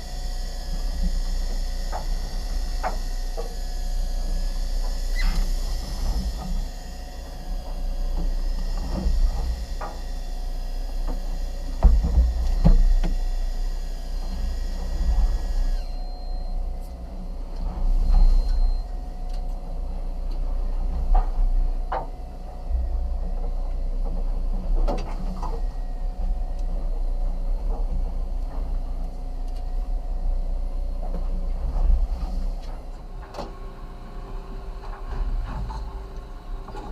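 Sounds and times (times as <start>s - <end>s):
low rumble: 15.8s - 24.9s.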